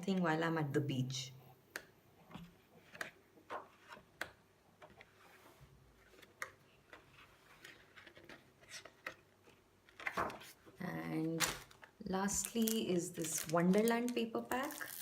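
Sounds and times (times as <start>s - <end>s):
paper pads taps and rustles: 6.0s - 10.6s.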